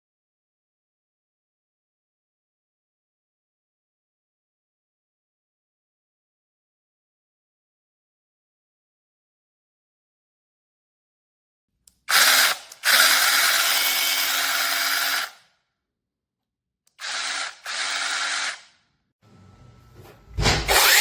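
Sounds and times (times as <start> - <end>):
battery chainsaw running: 12.1 - 15.4, 17.0 - 18.7, 20.7 - 21.0.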